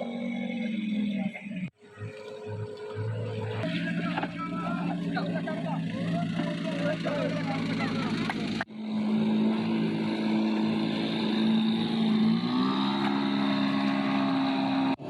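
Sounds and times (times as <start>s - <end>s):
engine running: 0.0s - 15.0s.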